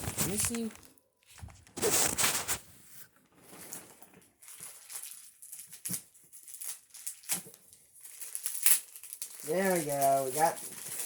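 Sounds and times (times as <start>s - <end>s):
toy packaging crinkling: 0.0s - 0.9s, 3.5s - 11.0s.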